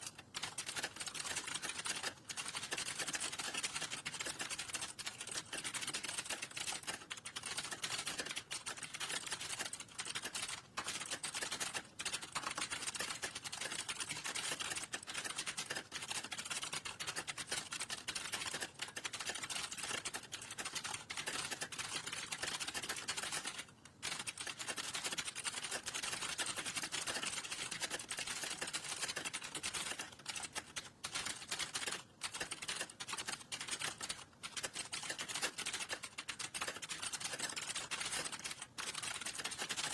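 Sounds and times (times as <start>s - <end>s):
typing on keyboard: 0.0s - 39.9s.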